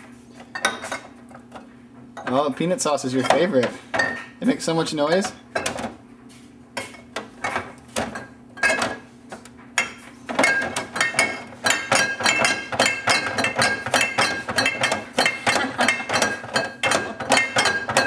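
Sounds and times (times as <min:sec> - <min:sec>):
glass bottles clinking: 0:03.1 - 0:04.4, 0:07.4 - 0:09.0, 0:09.8 - 0:18.0.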